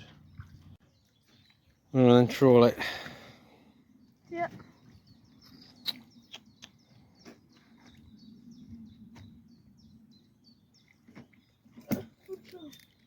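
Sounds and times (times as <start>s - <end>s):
small bird chirping: 3.9s - 13.0s.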